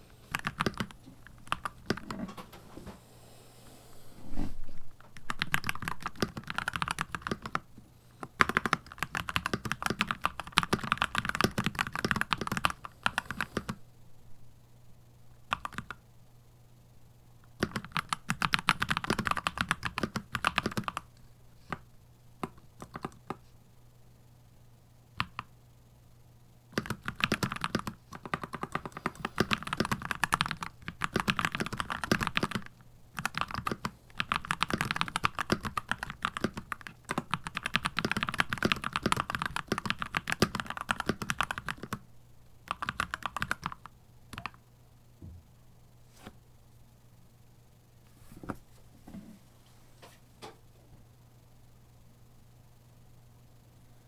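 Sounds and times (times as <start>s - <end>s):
mechanical keyboard typing: 0.3s - 2.4s, 5.0s - 13.8s, 15.5s - 16.0s, 17.5s - 21.1s, 22.4s - 23.4s, 25.2s - 25.5s, 26.7s - 42.0s, 42.7s - 44.6s.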